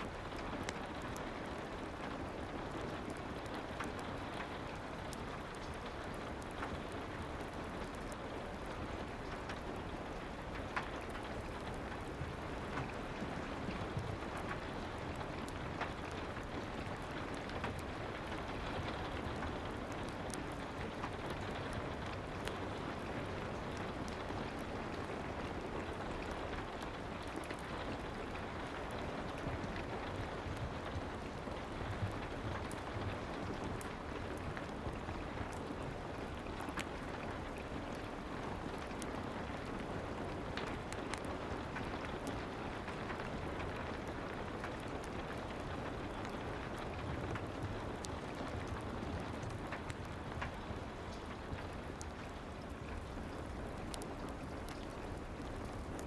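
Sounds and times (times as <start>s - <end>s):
soft rain: 0.0s - 56.0s
fireplace pops and crackles: 37.8s - 56.0s.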